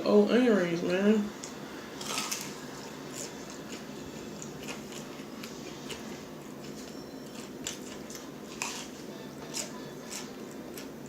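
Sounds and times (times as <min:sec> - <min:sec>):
chewing fried food: 0:01.4 - 0:11.0.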